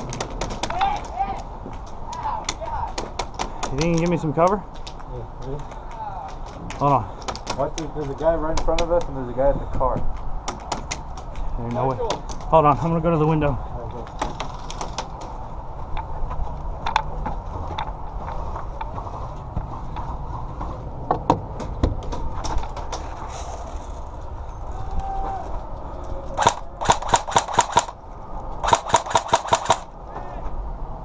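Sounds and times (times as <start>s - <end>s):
airsoft gun shots: 26.4s - 28.0s, 28.6s - 29.9s.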